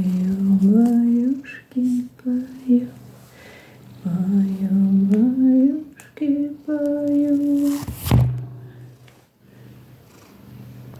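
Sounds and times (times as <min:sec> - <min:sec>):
cat purring: 0:00.0 - 0:03.1, 0:09.9 - 0:10.9.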